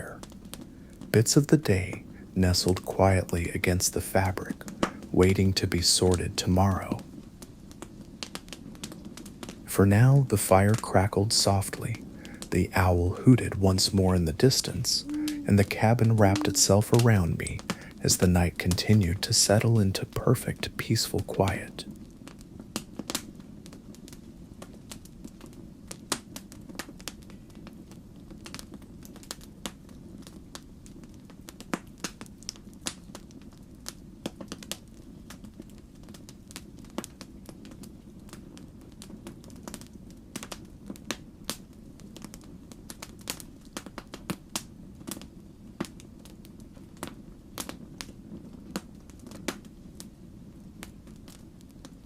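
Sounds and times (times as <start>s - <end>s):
log fire crackling and popping: 0.0s - 52.0s
low steady fire rumble: 0.0s - 52.0s.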